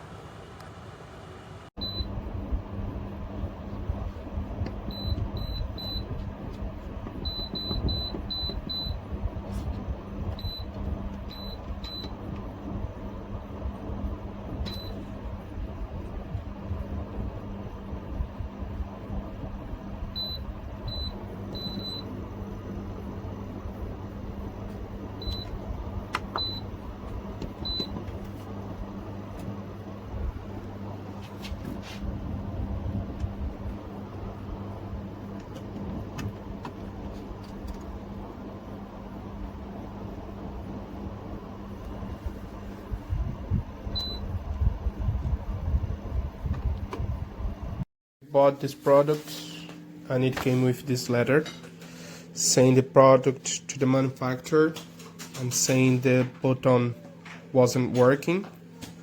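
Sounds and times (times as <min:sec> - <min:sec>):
dehumidifier humming: 0:00.0 - 0:59.0.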